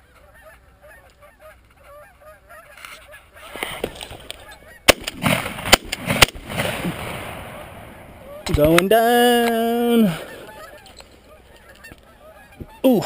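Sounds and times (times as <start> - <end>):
geese honking: 0.0 - 5.6, 7.4 - 13.0
shotgun shots: 4.8 - 8.8.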